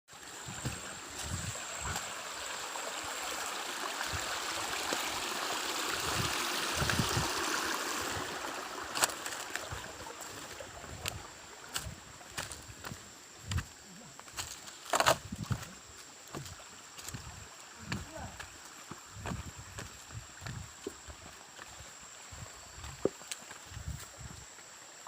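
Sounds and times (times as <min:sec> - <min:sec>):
waterfall rushing: 0:00.3 - 0:11.5.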